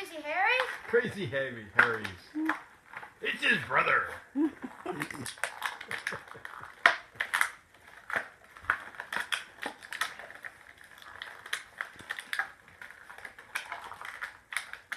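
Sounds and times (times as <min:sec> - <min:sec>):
plastic packaging crackling: 0:01.8 - 0:03.5, 0:04.7 - 0:14.9.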